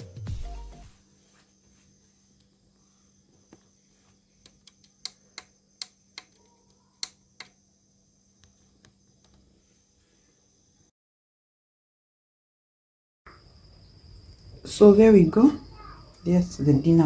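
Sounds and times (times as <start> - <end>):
sharp light clicks: 4.4 - 7.6.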